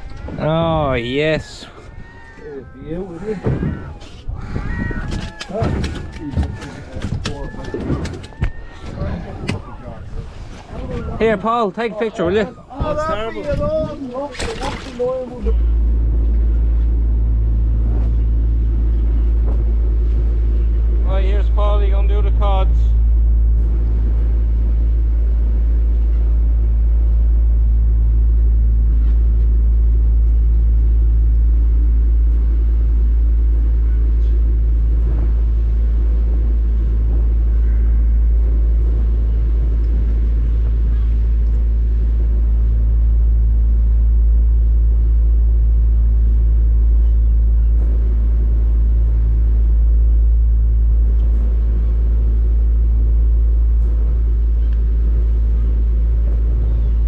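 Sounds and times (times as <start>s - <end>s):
boat engine running: 0.0s - 2.0s, 2.7s - 57.0s.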